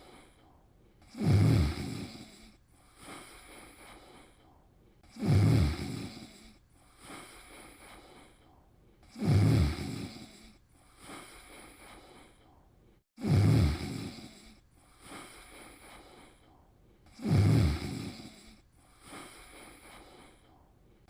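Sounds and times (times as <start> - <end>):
soft breath: 0.0 - 21.0
loud low snores: 1.0 - 4.4, 5.0 - 12.5, 13.2 - 16.5, 17.1 - 20.6.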